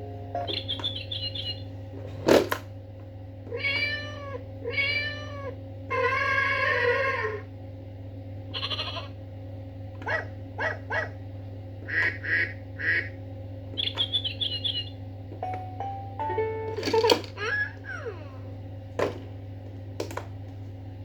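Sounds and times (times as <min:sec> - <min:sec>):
steady electronic hum: 0:00.0 - 0:03.5, 0:04.2 - 0:21.0
toy playing cat meowing: 0:15.4 - 0:18.3.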